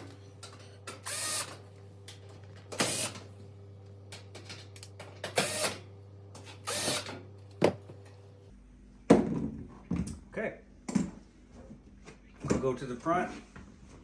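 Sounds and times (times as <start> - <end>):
cordless power driver running: 0.9 - 1.6, 2.7 - 3.2, 5.3 - 5.8, 6.6 - 7.2.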